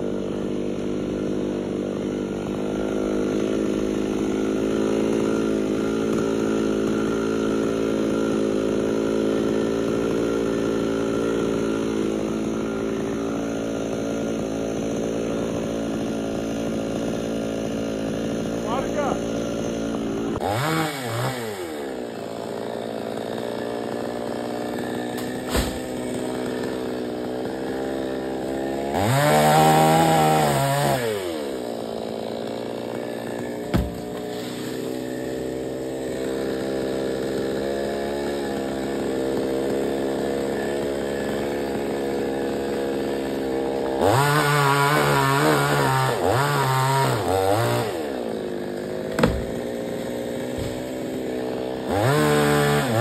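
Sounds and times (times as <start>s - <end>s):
chainsaw engine idling and revving: 0.0s - 53.0s
sharp knocks: 33.7s - 34.3s, 49.1s - 49.7s.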